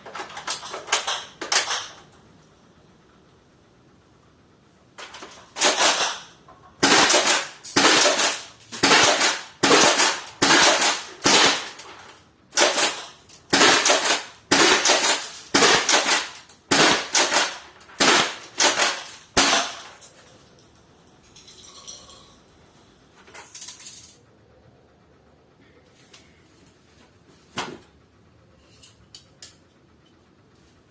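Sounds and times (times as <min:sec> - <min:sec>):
airsoft shotgun cracks and clacks: 0:00.1 - 0:02.1, 0:05.0 - 0:20.1.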